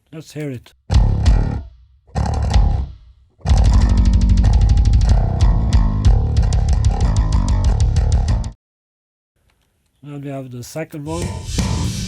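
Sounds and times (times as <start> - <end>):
heavy bass hits: 0.9 - 8.6, 11.2 - 12.0
music over fast beat: 2.5 - 8.6, 11.1 - 12.0.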